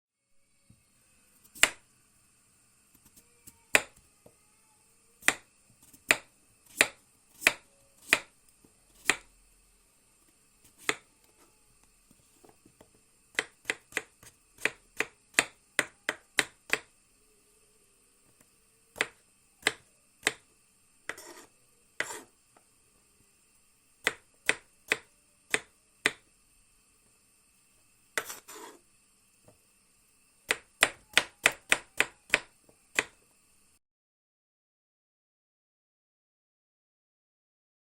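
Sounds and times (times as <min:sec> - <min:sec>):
knife chopping vegetables: 0:01.4 - 0:01.8, 0:03.0 - 0:04.0, 0:05.2 - 0:08.3, 0:08.9 - 0:09.3, 0:10.6 - 0:11.1, 0:13.3 - 0:16.9, 0:19.0 - 0:20.4, 0:21.1 - 0:22.3, 0:24.0 - 0:26.2, 0:28.2 - 0:28.8, 0:30.5 - 0:33.2
long knife strokes: 0:21.1 - 0:22.4, 0:28.2 - 0:28.8.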